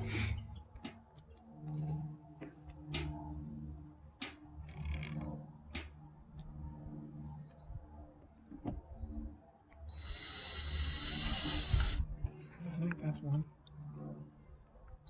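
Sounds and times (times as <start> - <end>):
low steady hum: 0.0 - 15.0
loud hiss with high whine: 9.9 - 12.1.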